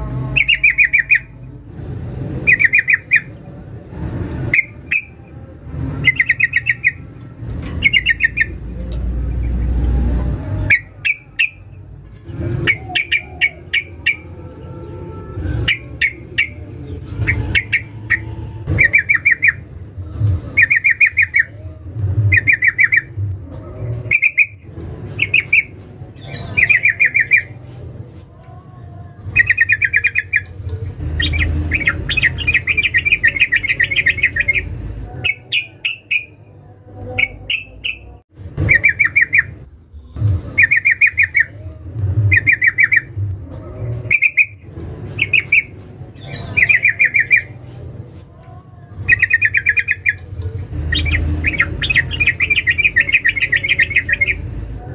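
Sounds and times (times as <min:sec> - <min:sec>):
bulbul chattering calls: 0:00.4 - 0:01.3, 0:07.8 - 0:08.6, 0:12.6 - 0:14.3.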